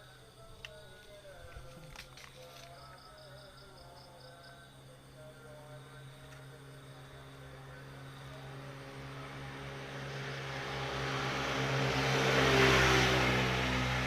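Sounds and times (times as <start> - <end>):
vehicle passing close by: 7.2 - 14.0.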